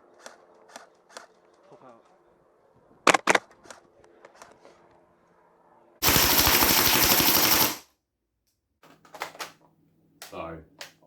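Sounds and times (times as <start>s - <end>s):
airsoft rifle rapid burst: 6.0s - 7.8s.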